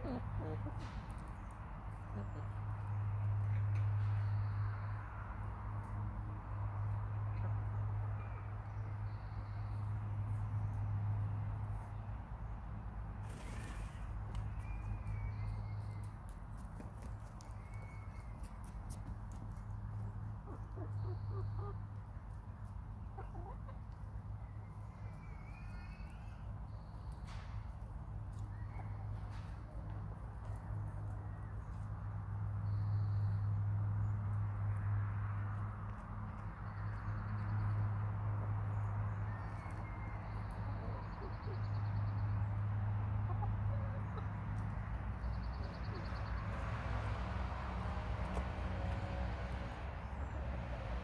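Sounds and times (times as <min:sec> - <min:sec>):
hens clucking: 0:23.0 - 0:24.1, 0:43.2 - 0:44.9.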